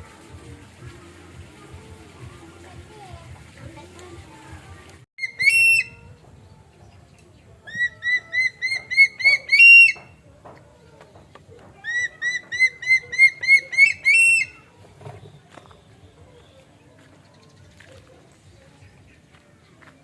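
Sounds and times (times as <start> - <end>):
bird calling: 5.2 - 6.2, 7.6 - 10.2, 11.8 - 18.1.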